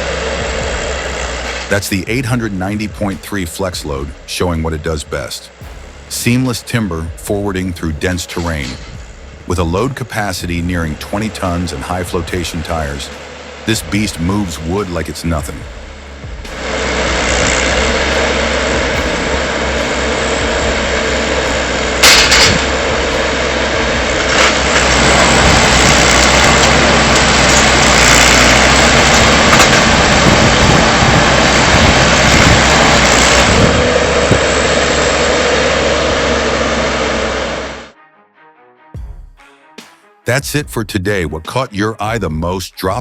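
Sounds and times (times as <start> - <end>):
diesel engine running hard: 0.0 - 37.9
loud metal clank: 15.6 - 33.7.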